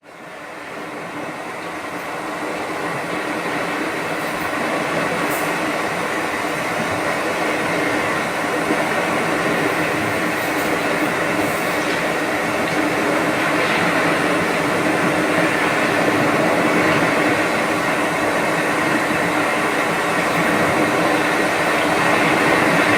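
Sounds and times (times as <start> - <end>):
sound machine hum and hiss: 0.0 - 22.9.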